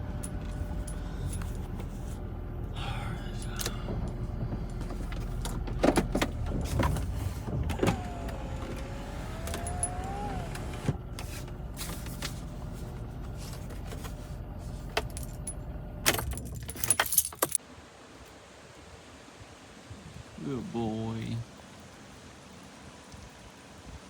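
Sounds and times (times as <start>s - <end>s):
truck engine idling: 0.0s - 16.1s
keys clicking: 16.1s - 17.6s.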